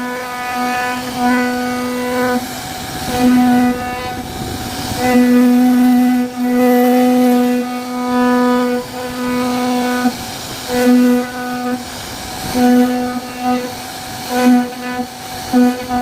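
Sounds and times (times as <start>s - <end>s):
cnc router motors whining: 0.0s - 16.0s.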